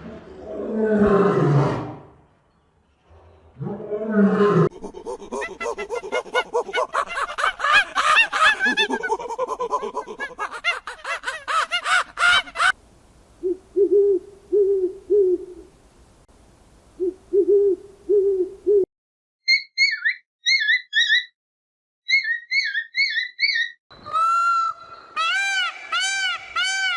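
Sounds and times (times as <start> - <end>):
high chattering animal calls: 19.5 - 21.3, 22.1 - 26.9.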